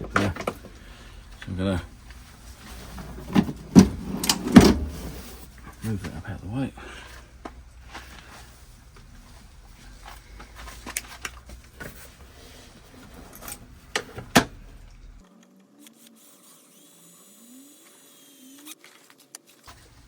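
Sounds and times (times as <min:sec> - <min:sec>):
handling knocks: 0:02.9 - 0:05.2
small electric drill spinning up: 0:15.8 - 0:18.8.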